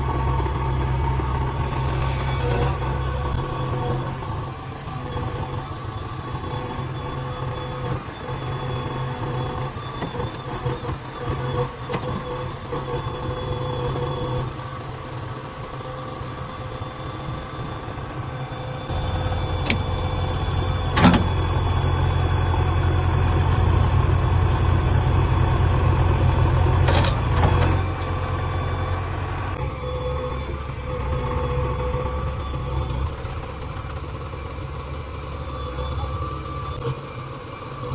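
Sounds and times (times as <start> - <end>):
heavy diesel engine running: 0.0 - 37.9.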